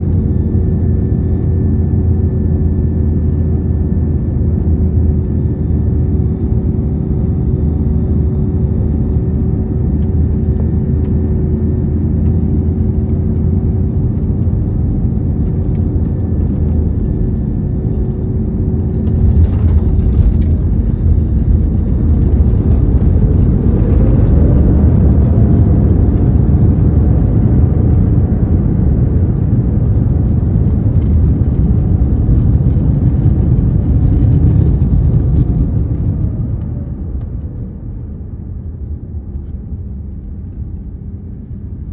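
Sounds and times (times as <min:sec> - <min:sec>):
airplane cabin rumble: 0:00.0 - 0:41.9
jet engines whining: 0:05.8 - 0:32.0.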